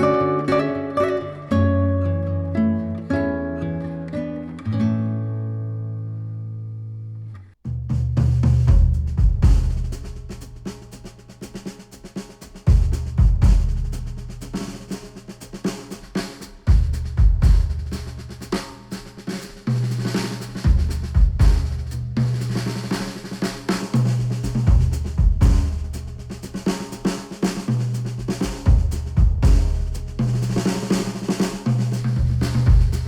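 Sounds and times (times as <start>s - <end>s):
deep bass notes: 7.7s - 10.6s, 12.7s - 14.6s, 24.0s - 26.5s, 27.8s - 30.7s, 31.8s - 33.0s
drum kit kick and snare hits: 7.7s - 33.0s.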